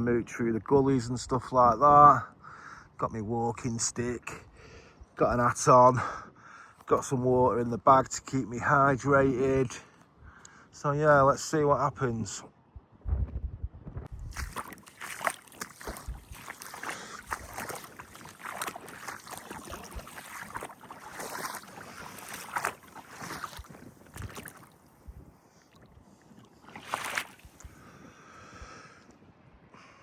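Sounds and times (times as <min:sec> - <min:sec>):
wind buffeting microphone: 0:12.8 - 0:28.8
sea water splashing: 0:14.3 - 0:27.9.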